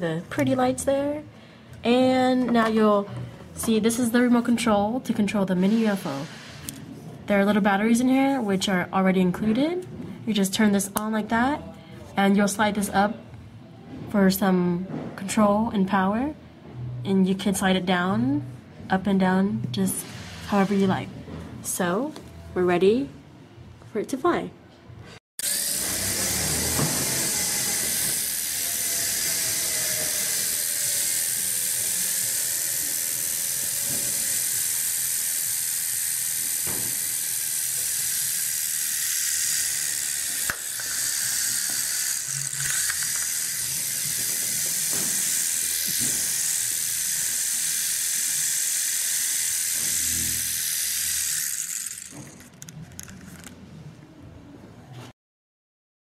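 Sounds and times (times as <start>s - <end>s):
toy motor high-pitched whir: 25.4s - 53.5s.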